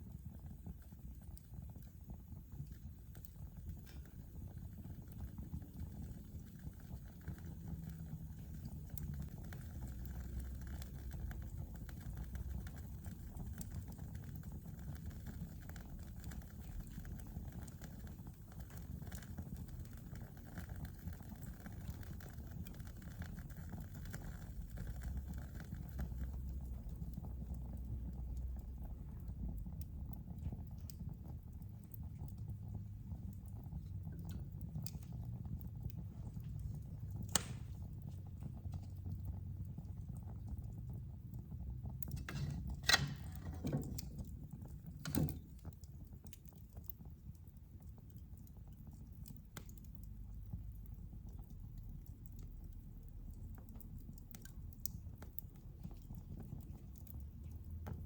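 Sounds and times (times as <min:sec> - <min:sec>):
low steady rumble: 0:00.0 - 0:46.4
fire crackling: 0:00.0 - 0:58.0
fire pops and snaps: 0:00.0 - 0:58.0.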